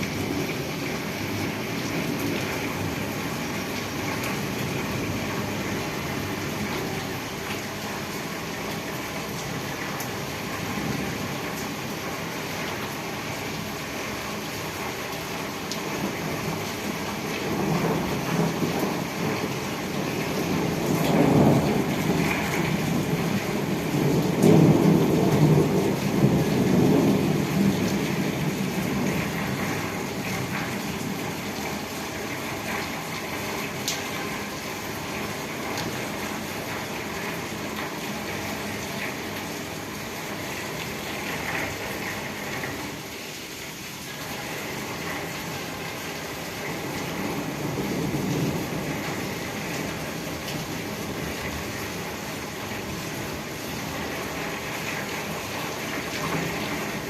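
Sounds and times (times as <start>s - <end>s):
steady rain: 0.0s - 57.0s
thunder rumbling: 17.4s - 31.3s.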